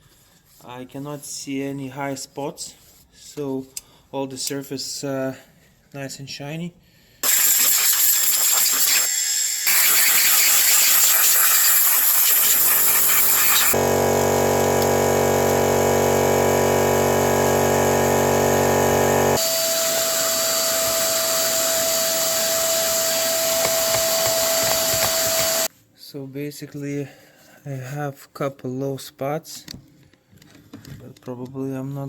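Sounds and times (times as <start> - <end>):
motor-driven machine hissing: 7.2 - 25.7
steady machine whine: 13.5 - 25.7
many-toned motor hum: 13.7 - 20.3.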